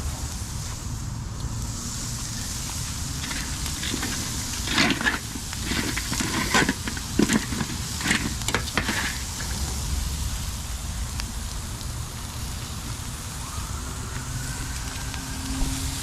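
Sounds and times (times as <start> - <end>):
burgers sizzling over fire: 0.0 - 16.0
fire crackles and pops: 0.0 - 16.0
steady low rumble: 0.0 - 16.0.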